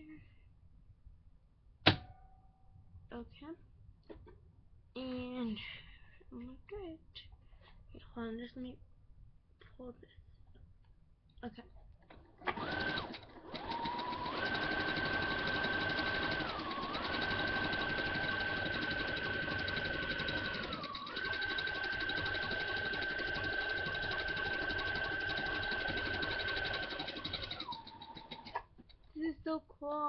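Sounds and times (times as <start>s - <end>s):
sewing machine motor whine: 12.2s - 28.6s.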